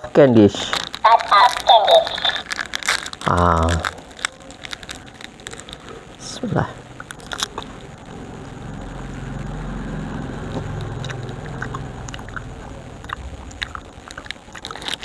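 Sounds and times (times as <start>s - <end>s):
chewing crunchy candy: 0.6s - 8.3s, 10.2s - 15.0s
low hum: 6.8s - 15.0s.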